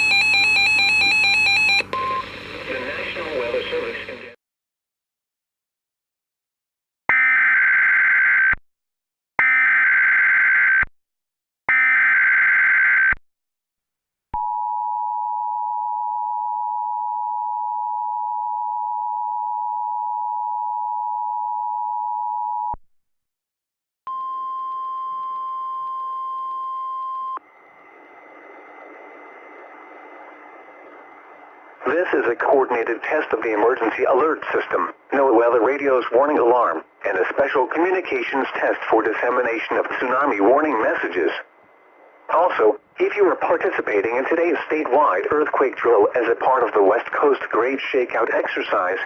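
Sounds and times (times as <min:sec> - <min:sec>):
single steady alarm tone: 0:00.0 - 0:02.3, 0:14.4 - 0:22.8, 0:24.1 - 0:27.7.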